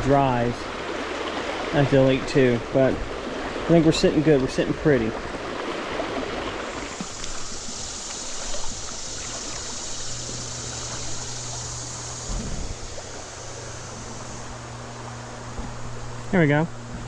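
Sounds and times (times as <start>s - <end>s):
stream water flowing: 0.0s - 17.0s
low bump: 10.2s - 17.0s.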